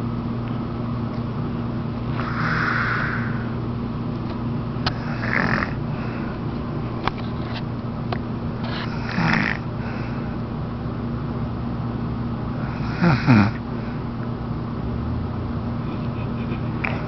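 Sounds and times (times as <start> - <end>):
steady low hum: 0.0 - 17.0
woman snoring: 2.1 - 3.5, 4.9 - 5.8, 8.9 - 9.6, 12.6 - 13.6.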